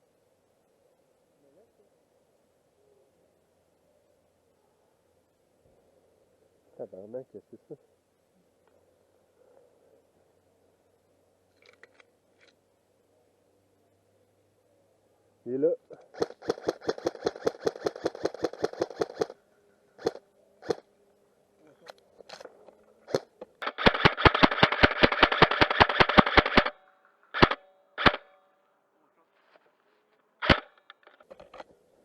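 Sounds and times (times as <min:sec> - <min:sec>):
airsoft guns firing bursts: 0:16.1 - 0:19.4, 0:20.0 - 0:20.8, 0:23.1 - 0:28.3, 0:30.4 - 0:30.8
airsoft single shots: 0:27.4 - 0:28.4, 0:30.4 - 0:30.8.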